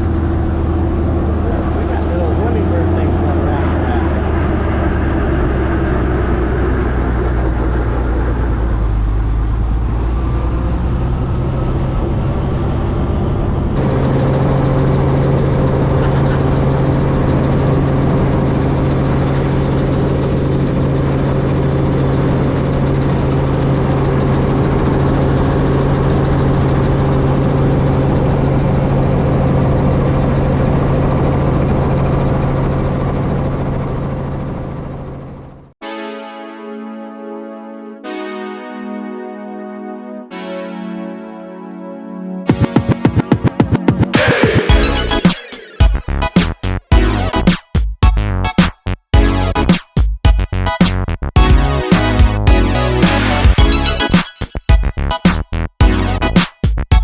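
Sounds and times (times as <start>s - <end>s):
helicopter engine and rotor drone: 0.0s - 35.8s, 42.5s - 46.3s.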